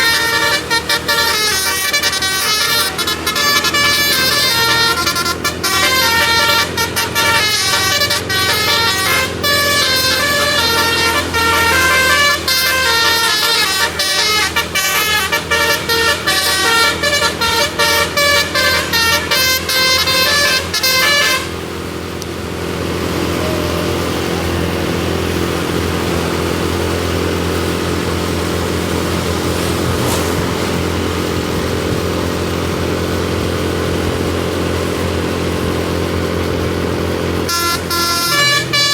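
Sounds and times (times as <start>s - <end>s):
musical air horn tune: 0.0s - 21.8s, 37.4s - 38.9s
vehicle engine and road noise: 0.0s - 38.9s.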